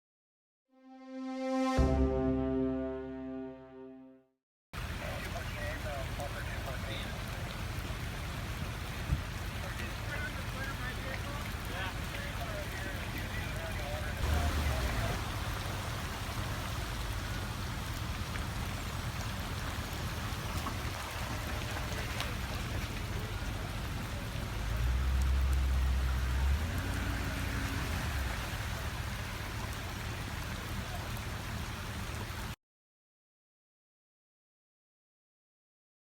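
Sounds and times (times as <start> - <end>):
steady rain falling: 4.8 - 32.6.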